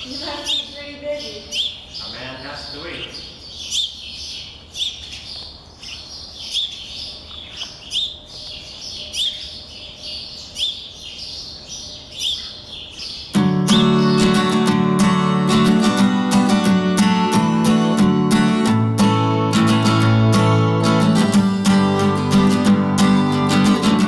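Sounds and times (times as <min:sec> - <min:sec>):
bird repeating high chirp: 0:00.0 - 0:02.2, 0:03.0 - 0:14.8
faint bird chirps: 0:00.0 - 0:14.6.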